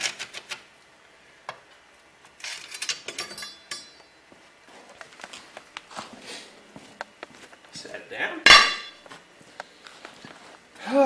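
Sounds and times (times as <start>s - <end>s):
metal parts clicking and clinking: 2.4s - 4.0s
ringing metallic rattle: 2.4s - 4.0s.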